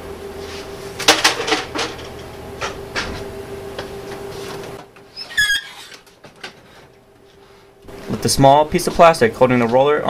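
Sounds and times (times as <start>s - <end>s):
printer humming: 0.8s - 5.1s
brief high squeak: 5.1s - 6.0s.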